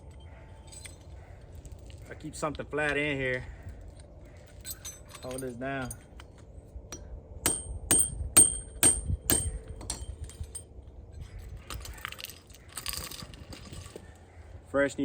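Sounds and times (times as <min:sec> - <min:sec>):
hammer striking metal: 0:06.9 - 0:10.1.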